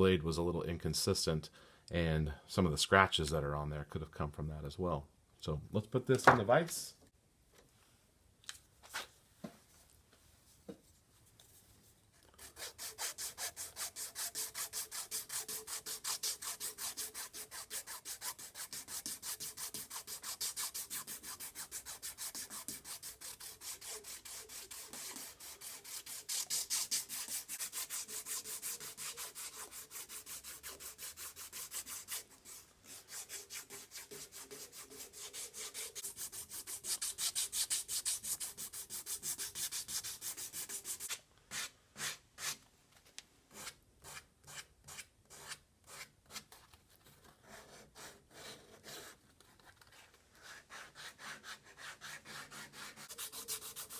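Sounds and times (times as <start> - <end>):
sandpaper rubbing on wood: 12.4 - 42.6, 50.4 - 53.9.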